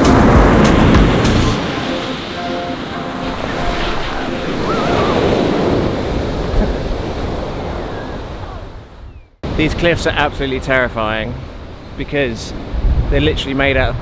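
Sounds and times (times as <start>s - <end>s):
sea waves washing ashore: 0.0s - 14.0s
wind on microphone: 2.8s - 9.3s, 12.6s - 14.0s.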